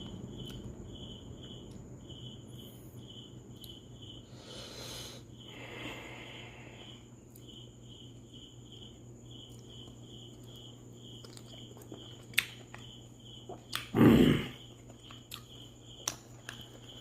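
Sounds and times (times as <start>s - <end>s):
cricket chirping: 0.0s - 17.0s.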